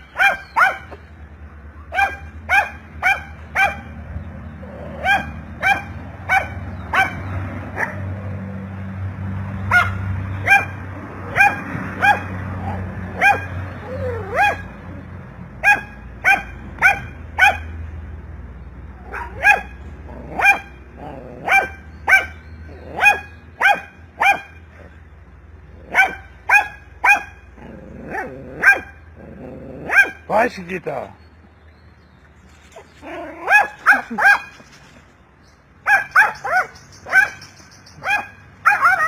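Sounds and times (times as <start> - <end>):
dog barking: 0.1 - 1.0, 1.8 - 3.9, 5.0 - 8.1, 9.7 - 13.6, 14.2 - 14.7, 15.6 - 17.7, 19.1 - 20.8, 21.4 - 24.6, 25.9 - 27.4, 28.1 - 29.0, 29.8 - 30.3, 33.4 - 34.6, 35.8 - 39.0.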